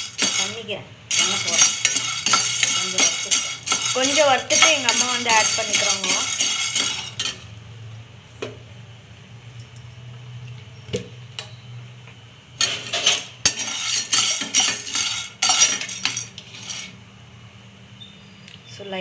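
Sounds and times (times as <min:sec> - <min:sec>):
metal spatula scraping a pan: 0:00.0 - 0:07.4, 0:12.6 - 0:17.0
low steady hum: 0:00.0 - 0:19.0.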